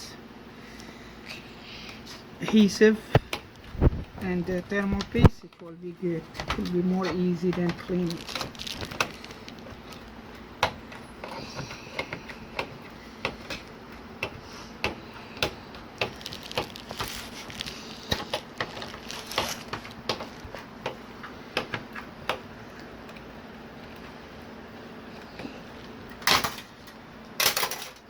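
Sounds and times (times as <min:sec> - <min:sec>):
strips scraping and peeling: 0:16.0 - 0:20.7.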